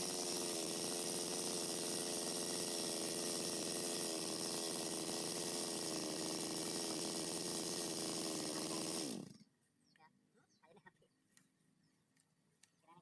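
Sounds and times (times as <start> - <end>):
chainsaw running: 0.0 - 9.5.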